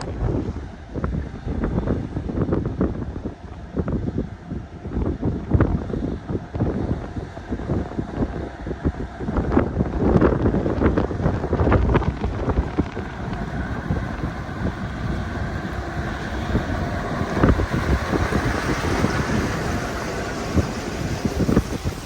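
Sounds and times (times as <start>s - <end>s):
diesel engine rumbling: 0.0s - 22.0s.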